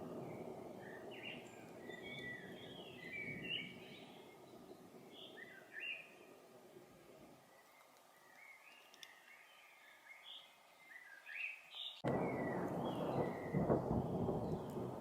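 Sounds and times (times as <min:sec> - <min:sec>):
thunder crack and rumble: 0:00.0 - 0:05.1, 0:12.0 - 0:15.0
bird chirping: 0:00.0 - 0:15.0.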